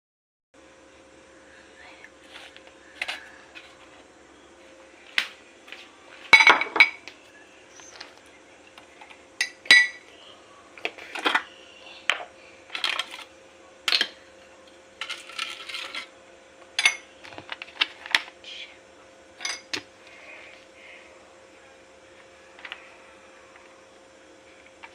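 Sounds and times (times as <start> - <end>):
faint steady hum: 0.6 - 24.9
metal utensils clinking on pans: 9.4 - 10.0, 15.0 - 16.1, 16.8 - 17.1, 19.4 - 19.8.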